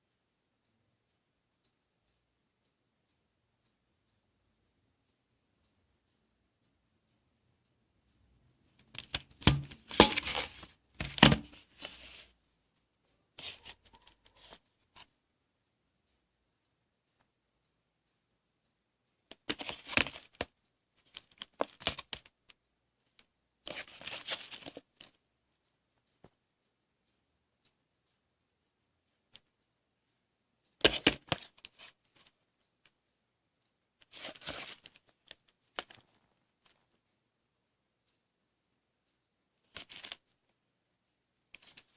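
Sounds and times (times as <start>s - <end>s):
packaging clicks and knocks: 9.0s - 11.6s
packaging clicks and rustles: 23.7s - 24.8s, 34.1s - 35.1s.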